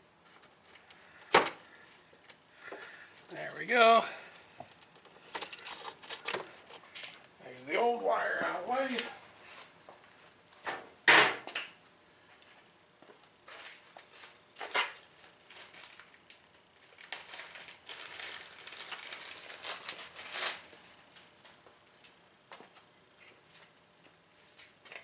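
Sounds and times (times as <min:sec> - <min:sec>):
rustling and scraping: 0:02.7 - 0:07.4.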